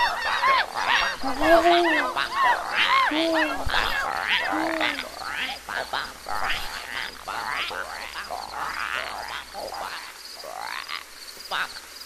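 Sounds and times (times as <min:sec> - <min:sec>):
goose or duck honking: 0:00.0 - 0:07.8
frogs croaking: 0:00.0 - 0:12.0.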